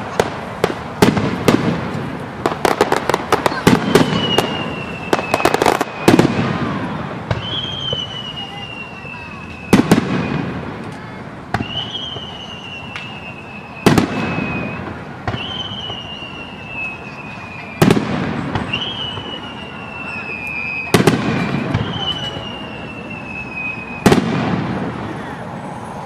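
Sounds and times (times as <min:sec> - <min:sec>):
fireworks bursting: 0:00.0 - 0:26.0
falling whistling tone: 0:03.8 - 0:06.2, 0:06.8 - 0:10.5, 0:11.6 - 0:18.0, 0:18.6 - 0:24.2.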